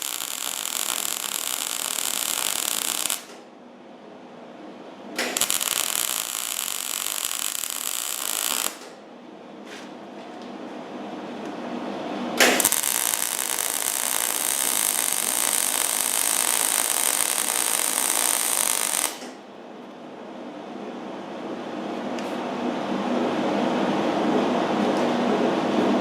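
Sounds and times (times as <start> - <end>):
welder arc crackling: 0.0 - 3.4, 5.2 - 9.0, 12.4 - 19.4
steady welder hum: 0.0 - 20.8.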